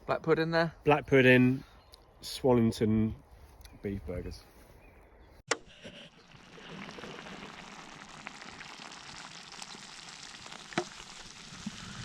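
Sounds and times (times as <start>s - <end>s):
meat sizzling as it fries: 6.4s - 12.0s.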